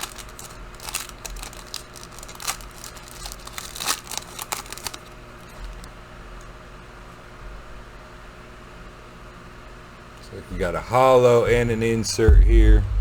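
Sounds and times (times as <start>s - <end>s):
plastic wrapper crinkling and tearing: 0.0s - 5.9s.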